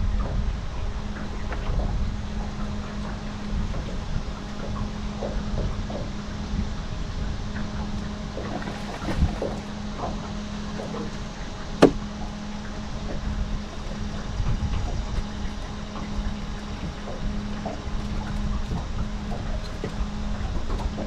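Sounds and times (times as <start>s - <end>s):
steady low hum: 0.0s - 21.0s
water sloshing and trickling: 0.0s - 21.0s
sharp knock: 11.8s - 12.0s.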